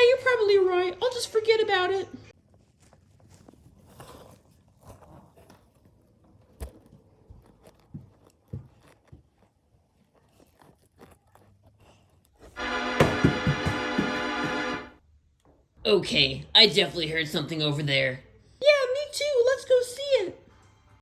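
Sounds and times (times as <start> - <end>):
loud held organ chord: 12.6 - 15.0.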